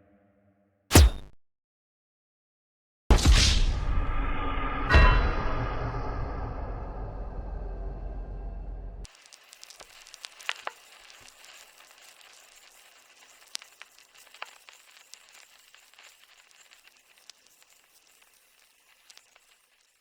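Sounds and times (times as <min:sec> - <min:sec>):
crackling hiss with pops: 0:09.1 - 0:20.0.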